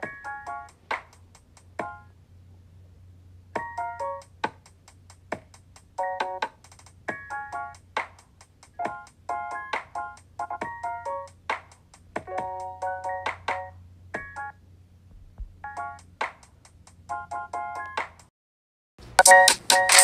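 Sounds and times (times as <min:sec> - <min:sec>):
electronic keyboard music: 0:00.0 - 0:00.8, 0:03.6 - 0:04.4, 0:06.0 - 0:06.5, 0:07.1 - 0:07.8, 0:08.8 - 0:11.4, 0:12.3 - 0:14.5, 0:17.1 - 0:18.0, 0:19.2 - 0:20.0
sharp clicks: 0:19.2 - 0:20.0.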